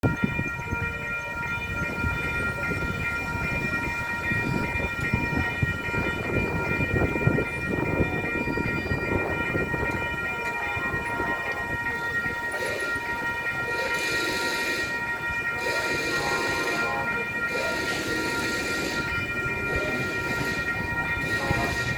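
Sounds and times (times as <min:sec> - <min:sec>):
locomotive rumble and knocking: 0:00.0 - 0:14.4
steady high-pitched tone: 0:09.4 - 0:21.9.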